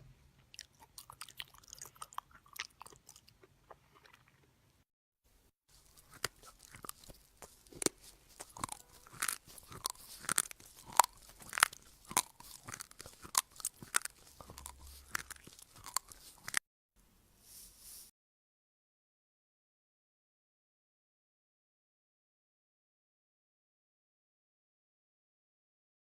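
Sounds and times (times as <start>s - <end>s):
person chewing crunchy food: 0.4s - 4.6s, 5.7s - 16.6s.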